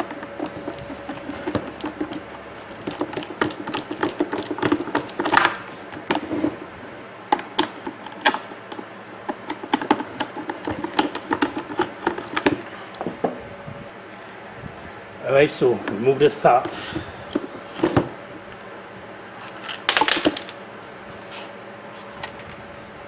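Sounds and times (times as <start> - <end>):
coffee maker parts clicking and tapping: 9.4 - 13.1.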